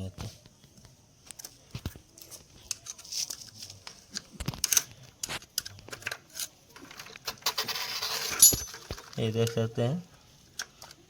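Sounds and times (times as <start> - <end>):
small metal parts clicking and scraping: 2.2 - 9.7.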